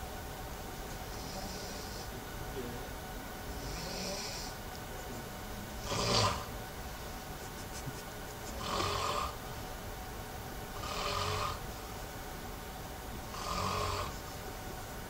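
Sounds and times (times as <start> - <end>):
person snoring: 1.1 - 2.1, 3.6 - 4.6, 5.8 - 6.5, 8.6 - 9.4, 10.8 - 11.6, 13.3 - 14.2.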